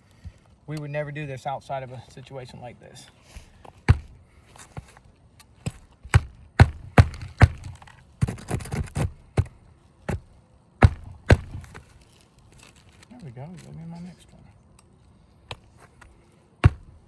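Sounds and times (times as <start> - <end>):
hammer striking nails: 3.8 - 4.2, 5.6 - 11.8, 16.6 - 17.0.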